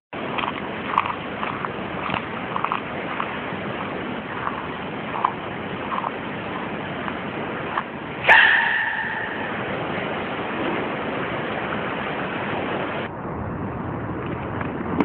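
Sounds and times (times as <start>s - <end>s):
steady hiss: 1.8s - 13.1s.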